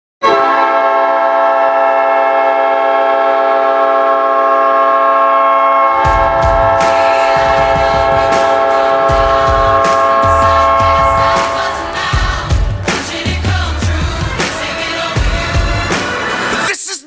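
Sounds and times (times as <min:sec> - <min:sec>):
goal horn blasting: 0:00.2 - 0:11.8
song with pounding drum beat: 0:06.0 - 0:16.8.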